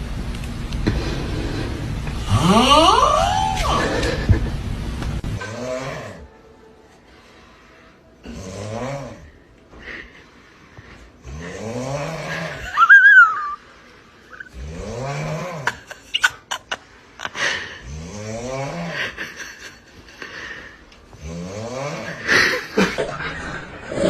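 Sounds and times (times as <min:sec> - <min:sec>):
loud snoring: 0:00.9 - 0:03.1, 0:05.4 - 0:06.3, 0:08.2 - 0:09.3, 0:11.2 - 0:12.6, 0:14.4 - 0:15.9, 0:17.8 - 0:19.2, 0:21.2 - 0:22.5
high-pitched squeal: 0:02.2 - 0:04.2.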